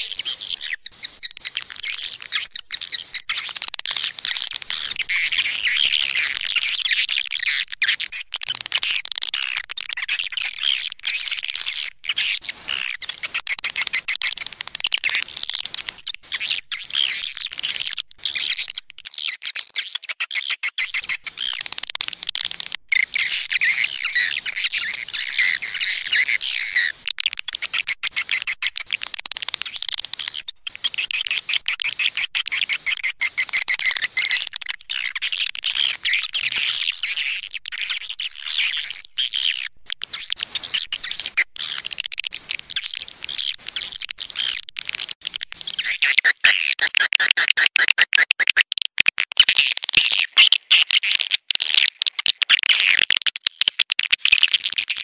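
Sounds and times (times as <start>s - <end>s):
swiftlets twittering and chirping: 0.0s - 48.7s.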